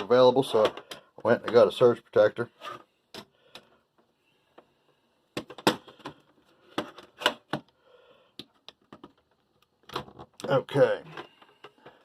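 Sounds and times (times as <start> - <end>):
plastic clicks and knocks: 8.4 - 12.0.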